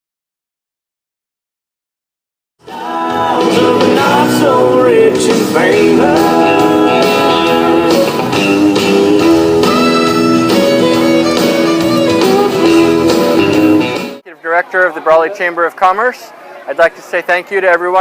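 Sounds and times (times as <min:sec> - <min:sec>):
country song with guitar and singer: 0:02.6 - 0:14.2.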